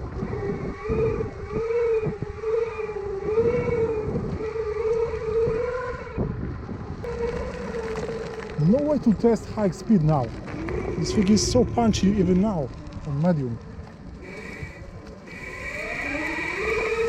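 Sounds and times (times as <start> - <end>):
electric motors whining: 0.0 - 17.0
wheels rumbling on rough ground: 0.0 - 17.0.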